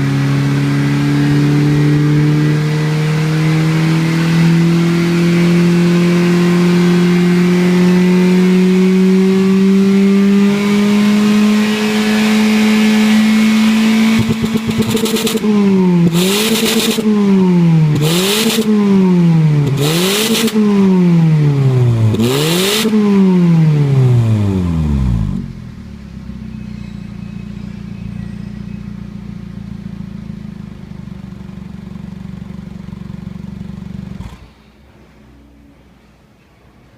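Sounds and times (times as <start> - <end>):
car engine revving: 0.0 - 35.9
car engine idling: 10.5 - 22.6, 23.2 - 36.8.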